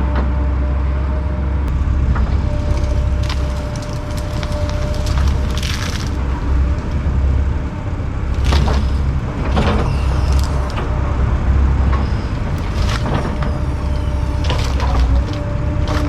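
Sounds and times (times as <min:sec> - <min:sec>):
heavy diesel machinery droning: 0:00.0 - 0:16.0
wood and brush cracking: 0:02.2 - 0:07.4, 0:08.3 - 0:11.0, 0:11.9 - 0:16.0.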